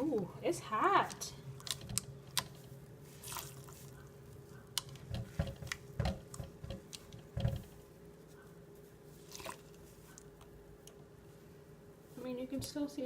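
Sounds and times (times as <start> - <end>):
wet sponge squishing: 3.0 - 4.1, 8.2 - 10.4.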